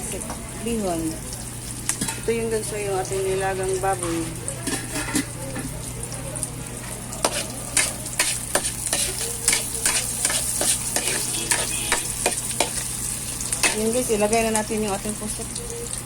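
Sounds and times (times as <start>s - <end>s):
food sizzling in hot oil: 0.0s - 16.0s
spatula scraping a pan: 4.0s - 5.4s, 7.2s - 12.9s.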